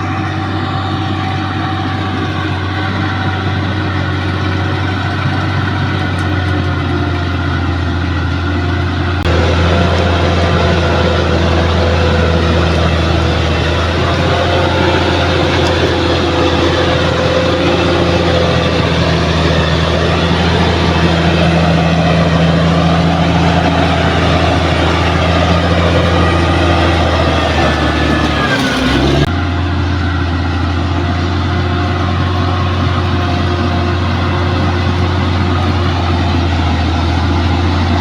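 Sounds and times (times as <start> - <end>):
bulldozer diesel engine running: 0.0 - 38.0.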